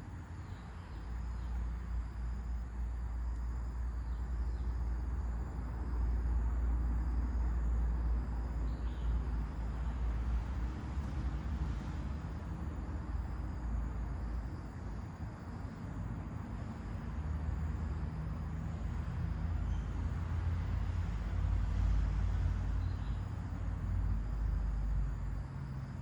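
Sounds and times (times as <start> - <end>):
faint bird chirps: 0.4 - 1.7, 8.6 - 9.3, 19.6 - 20.0, 22.8 - 23.3.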